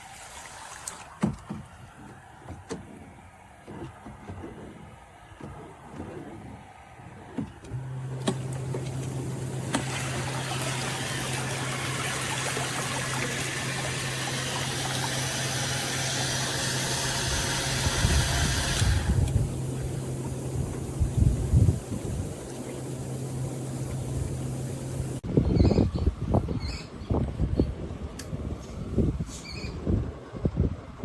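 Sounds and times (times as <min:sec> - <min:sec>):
water rushing: 0:00.0 - 0:02.0, 0:05.7 - 0:25.2.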